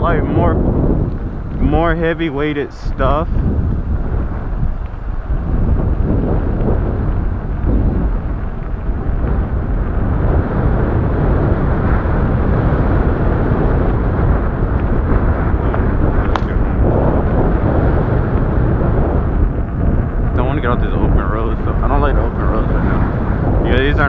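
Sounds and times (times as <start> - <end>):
wind buffeting microphone: 0.0 - 24.0
sharp click: 16.3 - 16.6.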